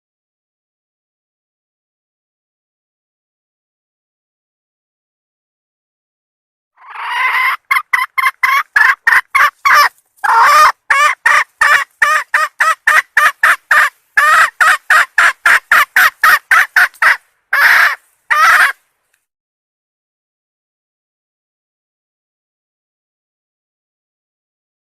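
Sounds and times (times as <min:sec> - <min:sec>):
junglefowl hen clucking: 0:06.8 - 0:18.8.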